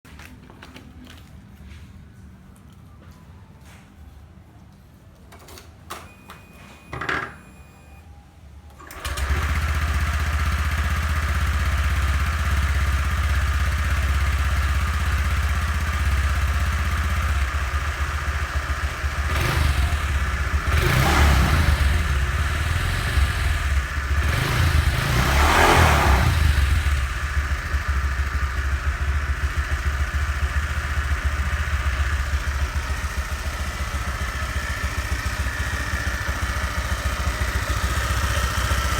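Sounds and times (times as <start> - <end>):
scooter engine starting and revving: 8.8 - 38.9.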